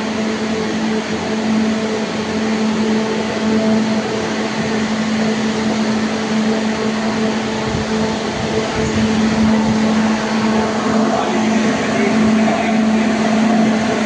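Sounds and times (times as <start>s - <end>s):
fan and air rushing: 0.0s - 14.0s.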